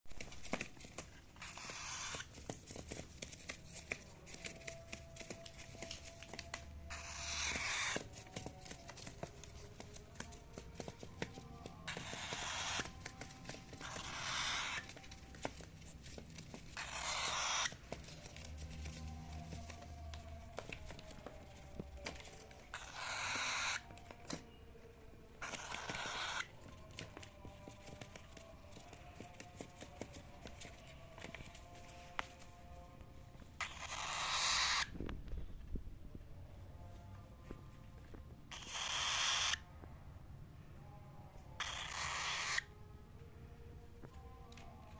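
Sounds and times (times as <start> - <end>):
cockatiel screeching: 1.4 - 2.3, 6.9 - 8.5, 11.9 - 15.1, 16.8 - 17.8, 22.6 - 24.0, 25.4 - 26.6, 33.6 - 34.9, 38.5 - 39.7, 41.6 - 42.7.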